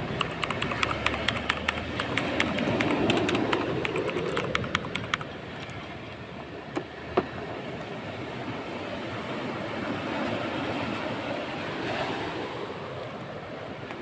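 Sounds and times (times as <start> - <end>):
mechanical keyboard clicking: 0.0 - 5.8
rushing background noise: 0.0 - 11.6.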